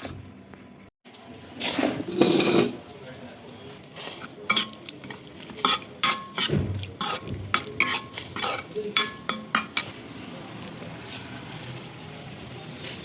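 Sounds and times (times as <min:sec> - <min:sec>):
metal spoon scraping a pan: 0:01.6 - 0:02.8, 0:04.0 - 0:10.0.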